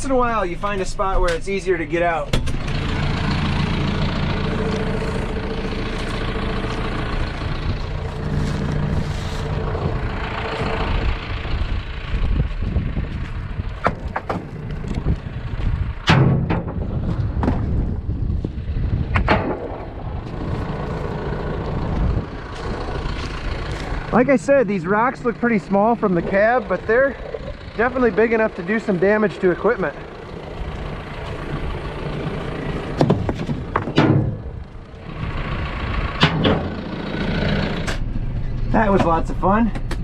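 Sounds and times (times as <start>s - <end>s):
tractor engine running: 0.0s - 40.0s
sharp clunks and knocks: 2.3s - 2.8s, 13.8s - 14.5s, 16.0s - 17.8s, 32.9s - 34.6s, 36.2s - 36.8s.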